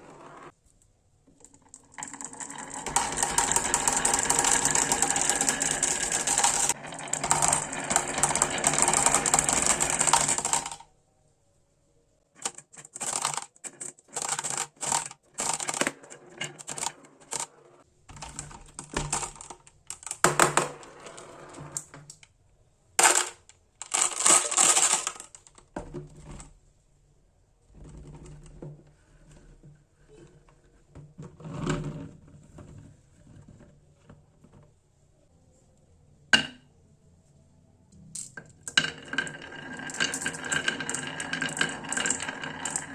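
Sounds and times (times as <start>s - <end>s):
marbles rattling down a marble run: 1.7s - 10.9s, 12.4s - 17.5s, 23.0s - 25.5s, 38.6s - 42.9s.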